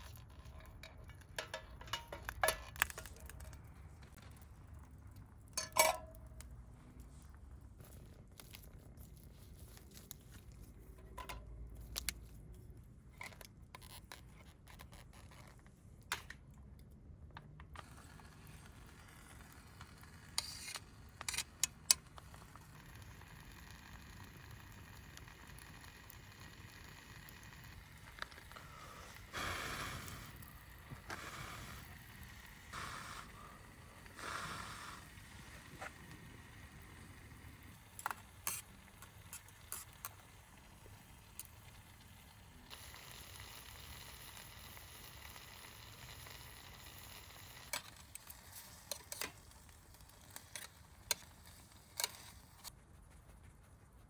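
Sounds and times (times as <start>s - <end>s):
utensils scraping a pot: 0.0s - 3.4s, 5.6s - 6.2s, 38.0s - 38.7s
faint steady hiss: 17.7s - 52.7s.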